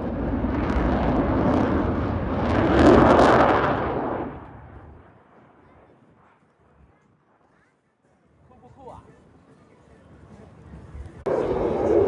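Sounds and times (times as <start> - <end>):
aircraft passing overhead: 0.0 - 7.6, 11.1 - 12.0.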